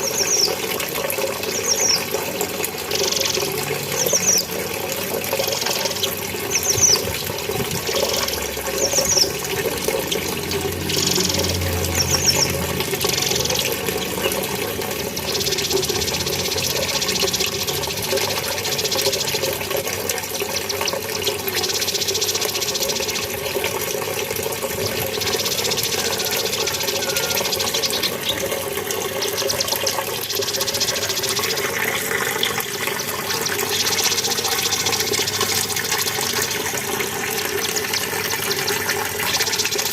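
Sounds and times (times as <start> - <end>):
bird chirping rapidly: 0.0 - 0.6, 1.4 - 2.2, 3.0 - 4.5, 5.4 - 19.6, 20.4 - 23.3, 24.9 - 28.5, 29.1 - 32.0, 33.0 - 35.7
flowing water: 0.0 - 39.9.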